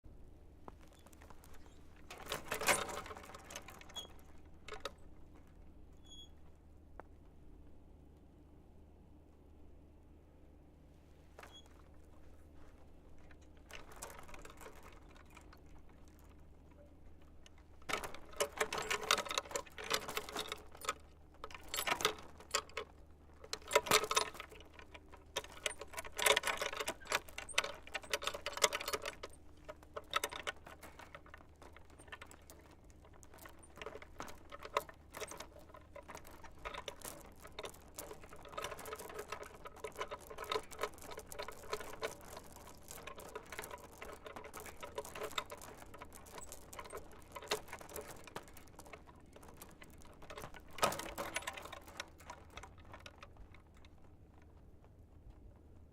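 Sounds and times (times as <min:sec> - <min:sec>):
swing chains rattling: 0:00.9 - 0:05.1, 0:17.5 - 0:54.0.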